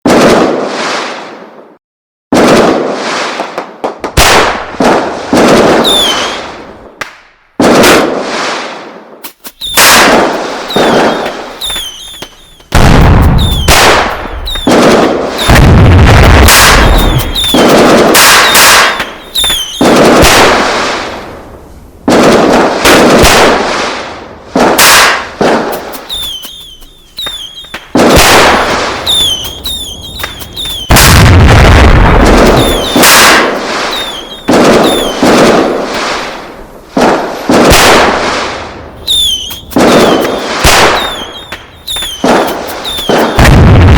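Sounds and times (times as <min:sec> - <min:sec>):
explosive bangs and booms: 0:09.6 - 0:21.4, 0:22.0 - 0:43.9
short high chirps: 0:10.6 - 0:12.7, 0:16.8 - 0:17.8, 0:25.7 - 0:27.9, 0:28.6 - 0:31.0, 0:39.1 - 0:43.4.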